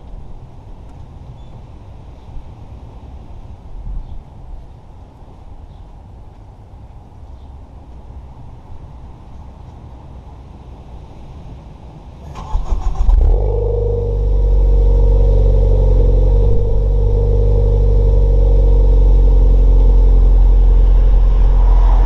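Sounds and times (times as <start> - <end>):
car engine starter cranking: 12.3 - 13.5
car engine idling: 12.4 - 22.0.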